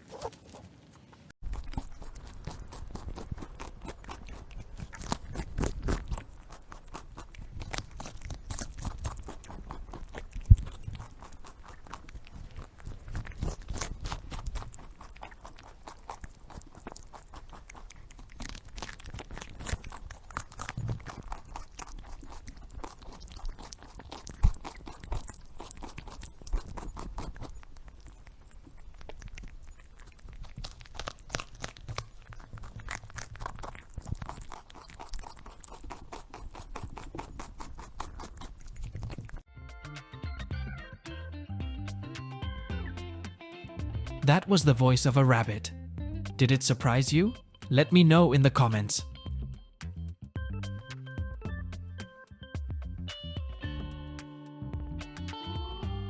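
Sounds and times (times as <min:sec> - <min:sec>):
rabbit chewing food: 0:00.0 - 0:41.2.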